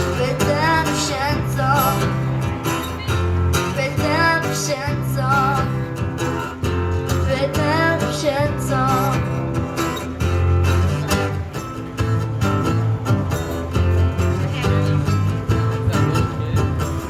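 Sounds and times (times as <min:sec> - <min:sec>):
person singing with vibrato: 0:00.0 - 0:02.7, 0:03.5 - 0:06.3, 0:07.1 - 0:09.6
strummed acoustic guitar: 0:00.0 - 0:17.0.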